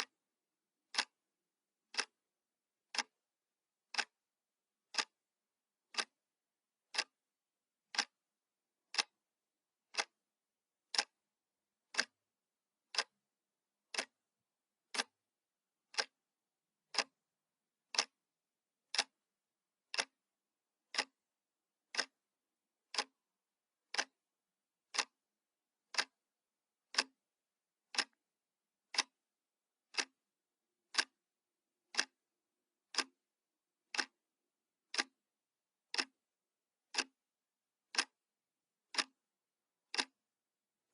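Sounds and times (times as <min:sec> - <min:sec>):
clock ticking: 0:00.9 - 0:01.2, 0:01.9 - 0:02.2, 0:02.9 - 0:03.2, 0:03.9 - 0:04.2, 0:04.9 - 0:06.2, 0:06.8 - 0:07.2, 0:07.9 - 0:08.2, 0:08.9 - 0:09.2, 0:09.9 - 0:10.2, 0:10.8 - 0:11.2, 0:11.9 - 0:12.2, 0:12.9 - 0:13.2, 0:13.8 - 0:14.2, 0:14.9 - 0:15.2, 0:15.9 - 0:16.2, 0:16.9 - 0:17.2, 0:17.9 - 0:18.2, 0:18.9 - 0:19.2, 0:19.8 - 0:20.2, 0:20.9 - 0:21.2, 0:21.9 - 0:22.2, 0:22.9 - 0:23.2, 0:23.9 - 0:24.2, 0:24.9 - 0:25.2, 0:25.9 - 0:26.2, 0:26.9 - 0:27.2, 0:27.9 - 0:28.2, 0:28.9 - 0:29.2, 0:29.9 - 0:30.2, 0:30.9 - 0:31.2, 0:31.9 - 0:32.2, 0:32.9 - 0:33.2, 0:33.9 - 0:34.2, 0:34.9 - 0:35.2, 0:35.9 - 0:36.2, 0:36.9 - 0:37.2, 0:37.9 - 0:38.2, 0:38.9 - 0:39.2, 0:39.9 - 0:40.2.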